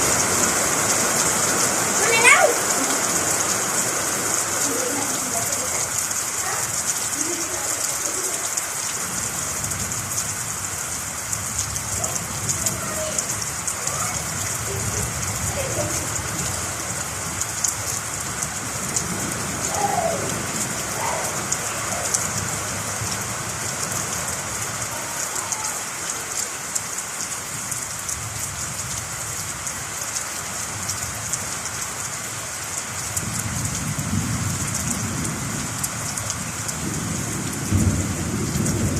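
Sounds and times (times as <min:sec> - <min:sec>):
heavy rain pattering: 0:00.0 - 0:38.9
low rumble of thunder: 0:09.0 - 0:25.7, 0:33.2 - 0:38.9.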